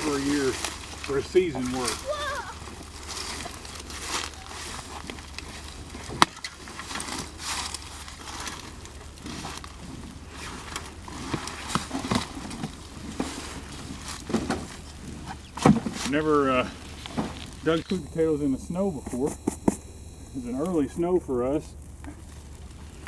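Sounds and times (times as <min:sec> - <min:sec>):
scraping rustling and crunching: 0:00.0 - 0:23.0.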